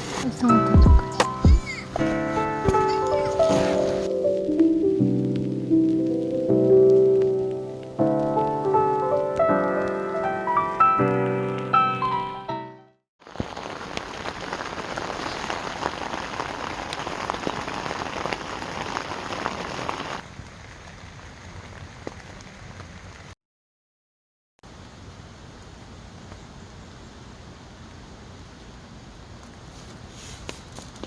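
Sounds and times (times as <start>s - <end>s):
rain pattering: 5.1s - 10.0s, 13.2s - 23.4s, 24.7s - 29.7s.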